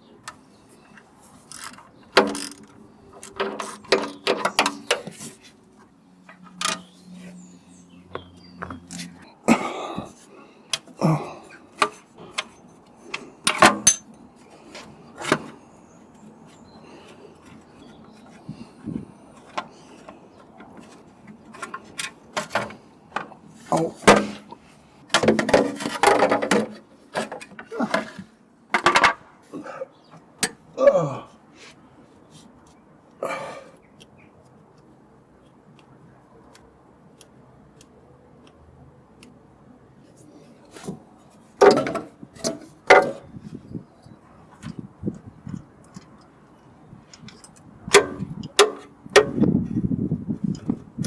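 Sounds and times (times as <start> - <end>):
hand tools clicking on engine parts: 11.7 - 15.5, 17.4 - 23.4, 44.6 - 49.4.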